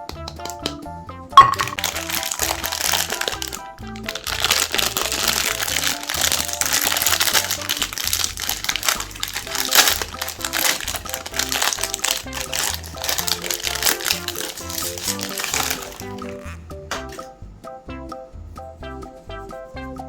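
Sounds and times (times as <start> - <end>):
background music: 0.0 - 20.0
meat grinder crunching ice cream: 1.8 - 16.4.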